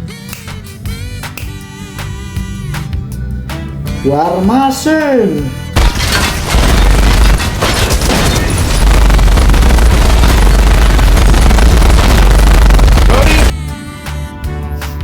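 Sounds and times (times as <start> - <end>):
booming explosions: 5.8 - 13.5
rapid gunfire: 5.8 - 13.5
deep rumble: 6.0 - 13.5.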